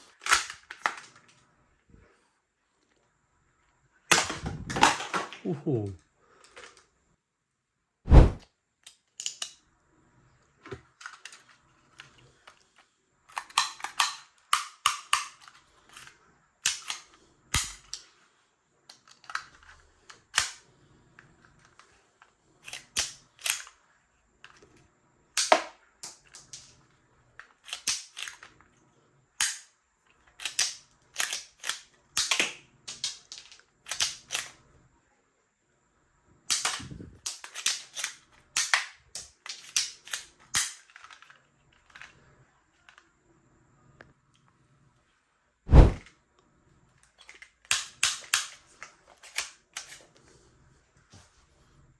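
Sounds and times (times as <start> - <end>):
toy gun snaps and clicks: 0.0 - 1.4, 4.1 - 5.5, 8.8 - 9.6, 13.3 - 18.1, 18.9 - 20.6, 22.6 - 23.8, 25.4 - 26.8, 27.4 - 28.6, 29.4 - 34.6, 36.5 - 42.1, 47.0 - 50.0.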